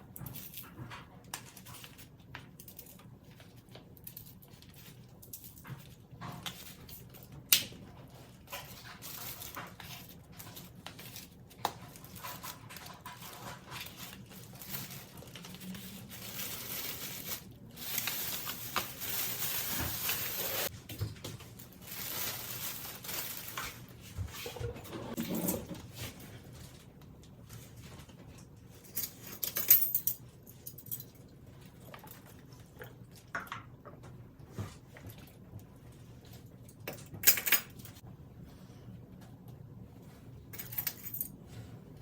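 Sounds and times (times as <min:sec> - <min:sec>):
crinkling and squishing: 0:00.1 - 0:29.2.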